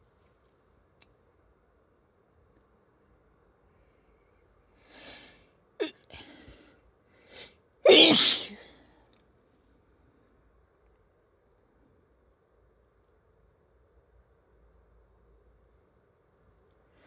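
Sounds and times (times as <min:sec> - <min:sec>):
breathy in-breath: 0:04.8 - 0:05.5, 0:06.1 - 0:07.6
person sneezing: 0:05.8 - 0:06.4, 0:07.8 - 0:08.8.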